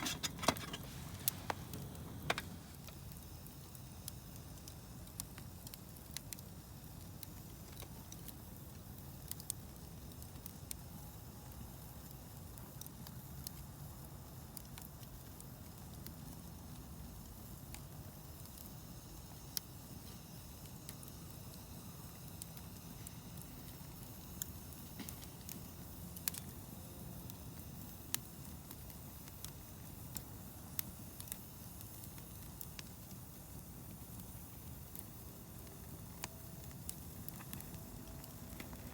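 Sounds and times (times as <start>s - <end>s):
steady low rumble: 0.0s - 2.9s
campfire crackling and popping: 0.0s - 38.9s.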